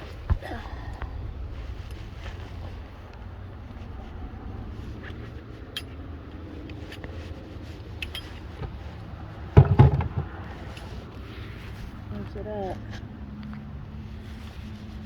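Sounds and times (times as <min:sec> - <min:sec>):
low rumble: 0:00.0 - 0:06.7
heavy thump: 0:09.6 - 0:10.6.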